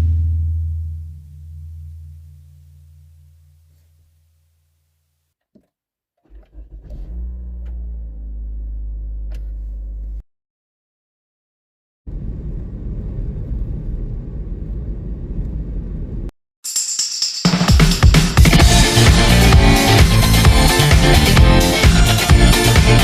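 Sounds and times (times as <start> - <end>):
engine rumbling: 6.2 - 10.2.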